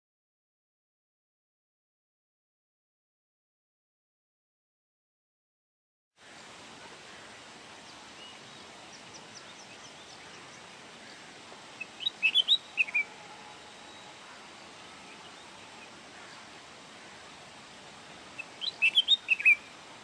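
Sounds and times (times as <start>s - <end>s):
faint hiss: 6.2s - 20.0s
finch singing: 7.8s - 16.5s, 18.3s - 19.8s.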